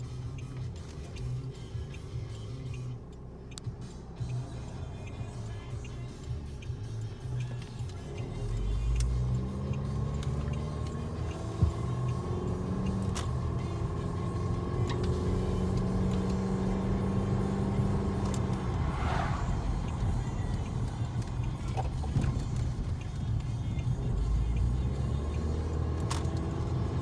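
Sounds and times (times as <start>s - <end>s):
car engine driving: 0.0s - 27.0s
road rumble: 0.0s - 27.0s.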